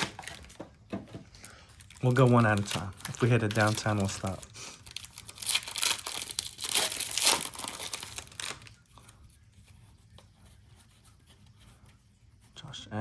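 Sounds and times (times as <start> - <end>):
plastic wrapping crinkling: 0.0 - 9.1.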